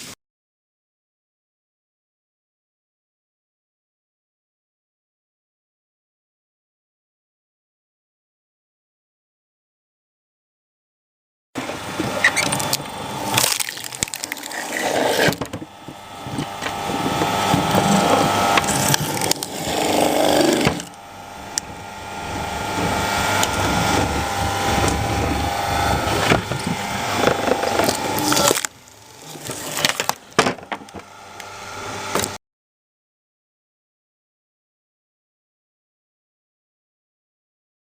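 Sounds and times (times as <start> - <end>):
log splitter running under load: 11.6 - 32.4
wood creaking and cracking: 11.6 - 32.4.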